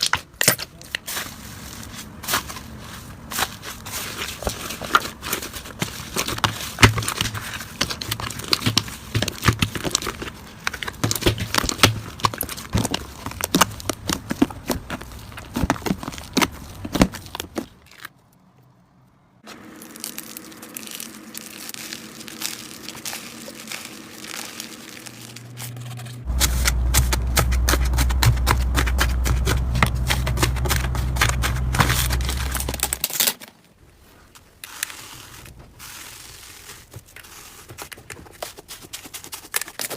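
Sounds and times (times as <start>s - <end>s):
slime crackling and popping: 19.4s - 25.7s
steady low hum: 19.4s - 33.1s.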